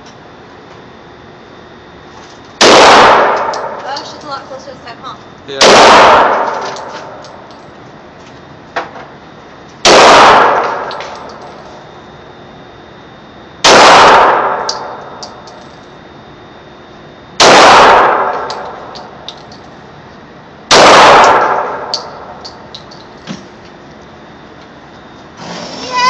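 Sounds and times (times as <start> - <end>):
pistol gunshots: 2.6 - 3.8, 5.6 - 7.2, 9.8 - 11.0, 13.6 - 15.0, 17.4 - 18.7, 20.7 - 22.2.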